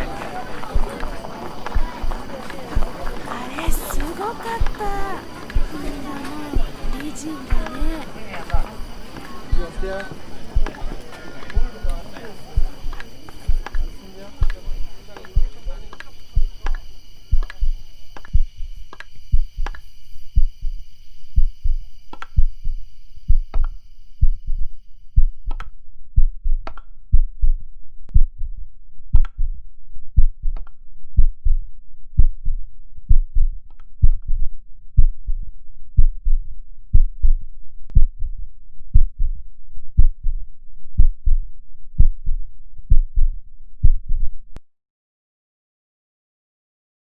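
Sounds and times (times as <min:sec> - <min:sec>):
low steady hum: 0:00.0 - 0:25.4
heartbeat thumps: 0:00.0 - 0:44.6.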